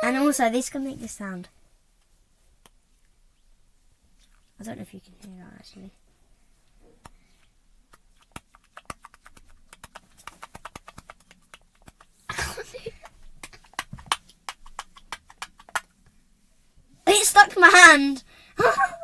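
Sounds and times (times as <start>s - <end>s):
squishy toy sticky clicks: 7.9s - 12.1s.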